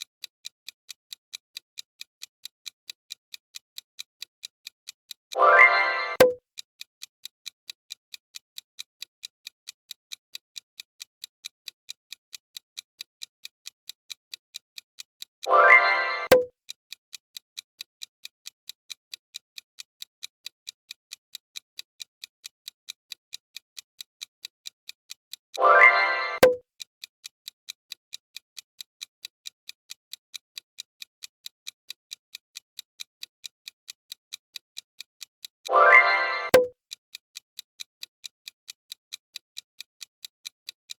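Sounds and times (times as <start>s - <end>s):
clock ticking: 4.6s - 6.4s, 15.2s - 16.5s, 22.9s - 26.6s, 28.6s - 40.9s
countdown timer ticking: 5.3s - 6.4s, 15.5s - 16.5s, 25.6s - 26.6s, 35.7s - 36.8s.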